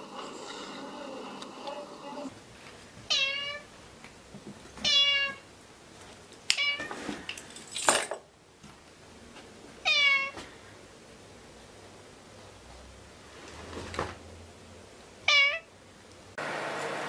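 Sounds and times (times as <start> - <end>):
cat meowing: 3.1 - 3.7, 4.8 - 5.4, 9.8 - 10.4, 15.2 - 15.7.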